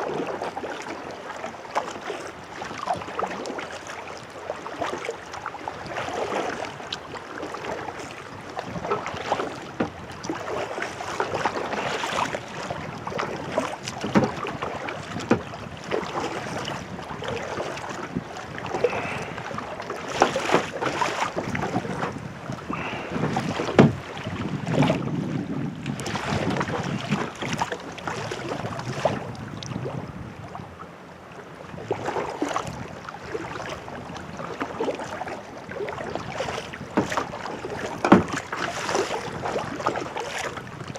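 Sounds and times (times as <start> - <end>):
paddle splashing water: 0.0 - 40.9
water slapping hull: 0.0 - 40.9
wind buffeting microphone: 11.1 - 30.8.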